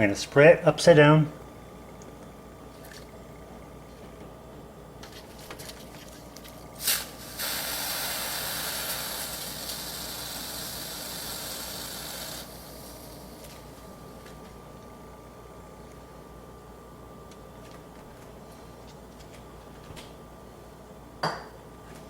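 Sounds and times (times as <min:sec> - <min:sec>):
compressed air can spraying: 0:06.8 - 0:13.1
steady spray hiss: 0:06.8 - 0:13.6.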